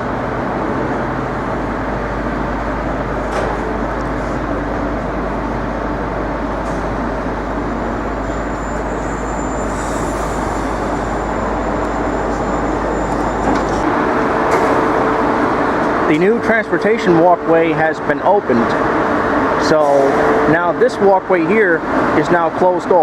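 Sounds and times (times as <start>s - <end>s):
machinery running: 0.0s - 23.0s
traffic: 0.0s - 23.0s.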